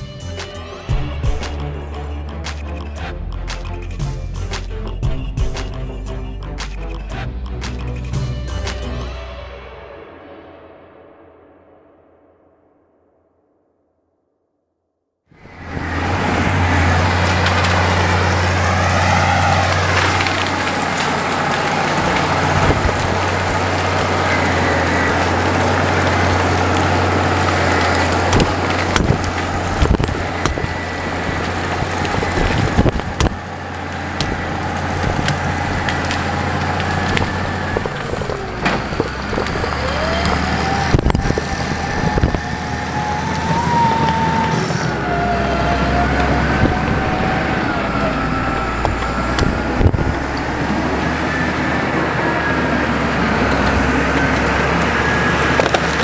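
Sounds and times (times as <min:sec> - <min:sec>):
bulldozer diesel engine under load: 0:00.0 - 0:09.0, 0:15.4 - 0:56.0
wavering whine: 0:15.4 - 0:56.0
wood cracking: 0:15.4 - 0:56.0.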